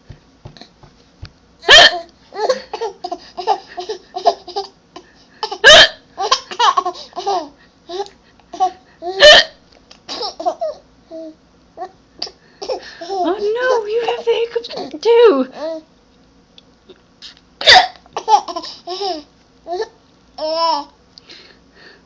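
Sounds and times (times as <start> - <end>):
child hiccuping: 1.6 - 2.9, 5.6 - 6.6, 9.1 - 10.4, 17.6 - 18.0.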